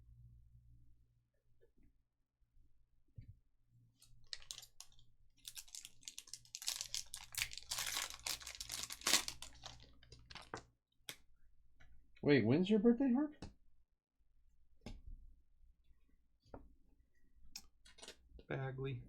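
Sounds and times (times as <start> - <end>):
foil wrapper tearing and crinkling: 4.3 - 10.6.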